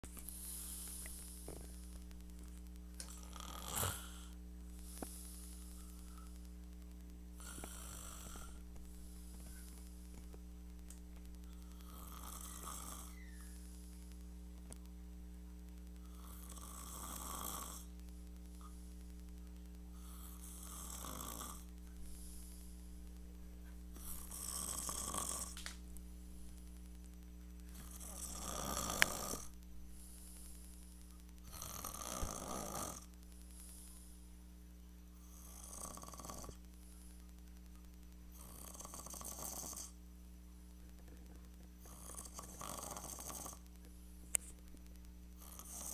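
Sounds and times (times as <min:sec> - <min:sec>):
steady electrical hum: 0:00.0 - 0:45.9
man snoring: 0:03.1 - 0:05.5, 0:07.4 - 0:08.6, 0:11.7 - 0:13.3, 0:16.0 - 0:17.9, 0:20.0 - 0:21.7, 0:24.0 - 0:25.6, 0:27.8 - 0:29.6, 0:31.4 - 0:33.1, 0:35.2 - 0:36.6, 0:38.4 - 0:40.0, 0:41.8 - 0:43.6, 0:45.4 - 0:45.9.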